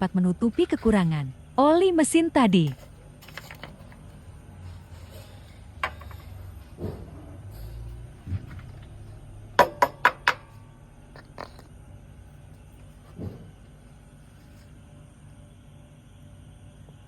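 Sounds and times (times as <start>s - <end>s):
low steady hum: 0.0s - 17.0s
sharp knocks: 9.6s - 10.5s.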